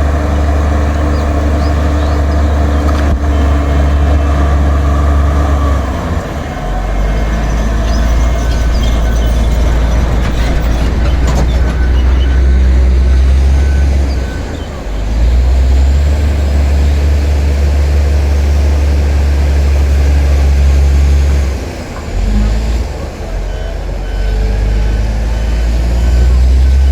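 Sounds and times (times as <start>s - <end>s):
bulldozer diesel engine running: 0.0s - 26.9s.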